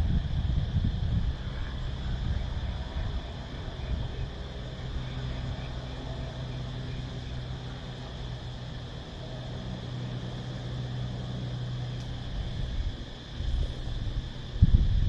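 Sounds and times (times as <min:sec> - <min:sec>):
cicadas buzzing: 0:00.0 - 0:15.0.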